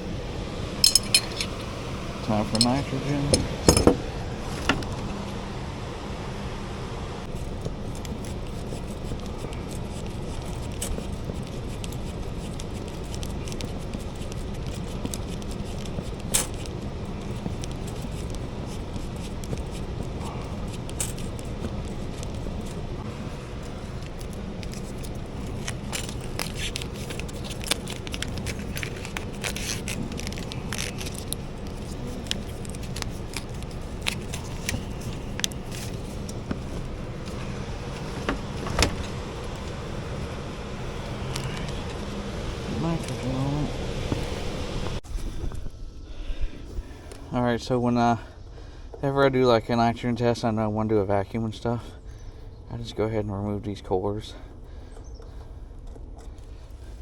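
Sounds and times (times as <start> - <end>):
steady low hum: 0.0 - 57.0
metal tools clicking and scraping: 0.8 - 1.7, 2.3 - 4.0.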